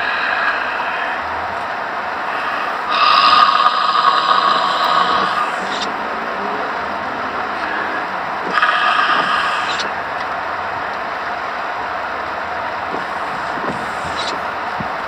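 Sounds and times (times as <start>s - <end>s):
steady background noise: 0.0s - 15.0s
child snoring: 2.9s - 5.8s.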